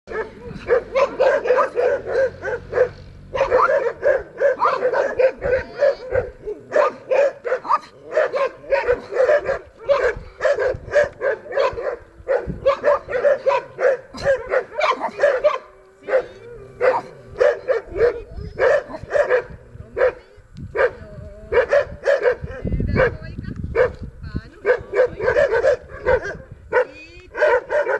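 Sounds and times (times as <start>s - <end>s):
dog barking and yipping: 0.1s - 20.2s, 20.8s - 23.2s, 23.8s - 24.0s, 24.6s - 27.9s.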